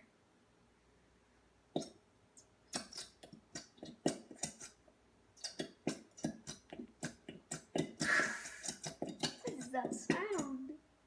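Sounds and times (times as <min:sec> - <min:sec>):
utensil stirring and tapping container: 0:02.7 - 0:04.8, 0:05.4 - 0:10.7.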